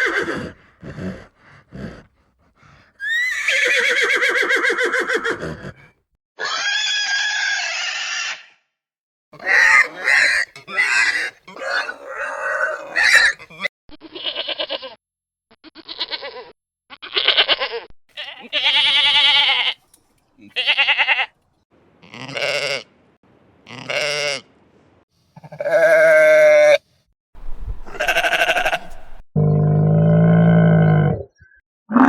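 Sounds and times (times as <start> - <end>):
livestock bleating: 11.8 - 15.0, 15.6 - 19.8, 20.4 - 21.3, 22.0 - 22.9, 25.4 - 26.8, 27.9 - 29.0.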